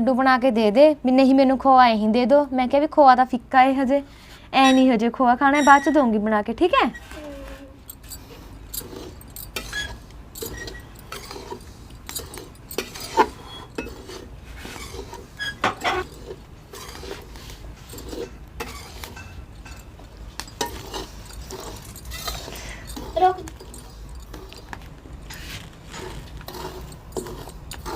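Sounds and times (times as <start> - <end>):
scraper scraping a metal pan: 6.9 - 19.4, 25.3 - 27.9.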